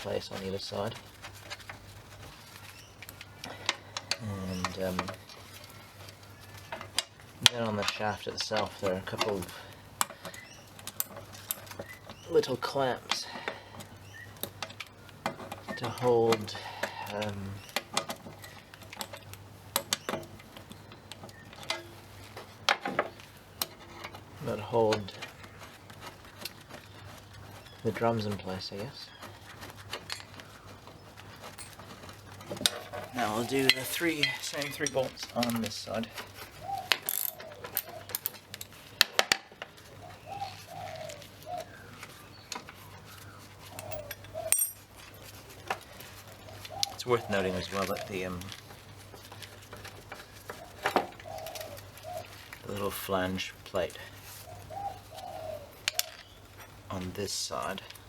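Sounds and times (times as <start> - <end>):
dove cooing: 30.3 - 39.0, 39.7 - 44.6, 45.2 - 56.9.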